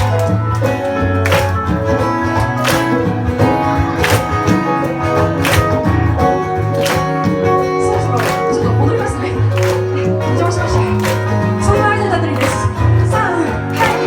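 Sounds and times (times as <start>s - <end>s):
guitar: 0.0s - 14.0s.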